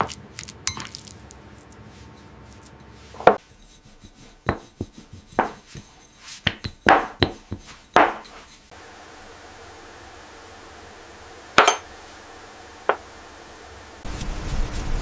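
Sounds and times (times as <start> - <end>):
knife chopping on cutting board: 3.2 - 8.5.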